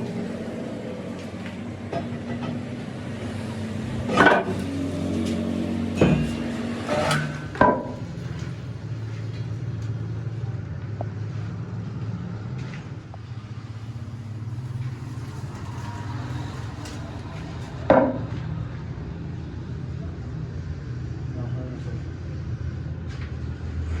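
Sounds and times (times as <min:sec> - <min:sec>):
low engine hum: 0:00.0 - 0:24.0
sharp metal clangs: 0:04.0 - 0:08.6.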